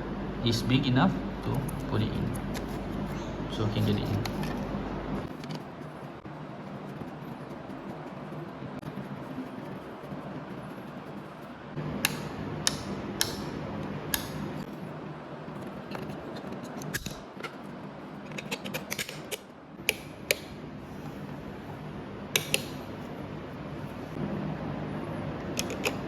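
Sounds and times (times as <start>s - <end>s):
steady low hum: 0.0s - 26.0s
switch parts clicking and clattering: 22.4s - 22.8s, 25.6s - 26.0s.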